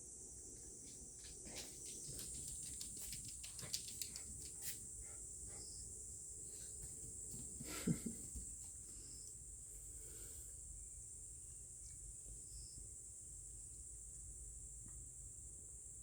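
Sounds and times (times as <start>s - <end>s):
small irregular clicks: 1.6s - 4.8s.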